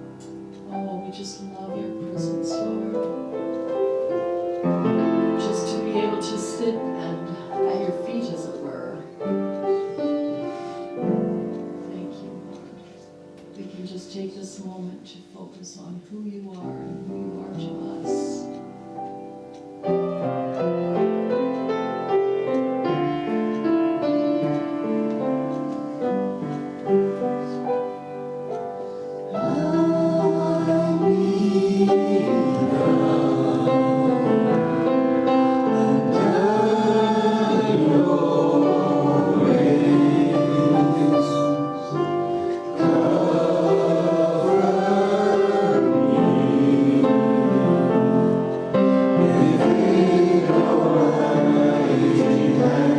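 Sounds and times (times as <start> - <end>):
keyboard sustained chords: 0.0 - 15.7, 16.7 - 52.9
voices singing worship song: 4.8 - 9.2, 28.8 - 52.9.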